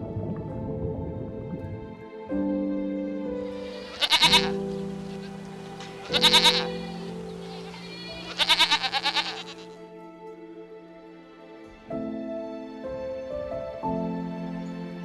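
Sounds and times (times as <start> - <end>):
background music with held notes: 0.0 - 15.0
quavering bleats: 3.4 - 9.8.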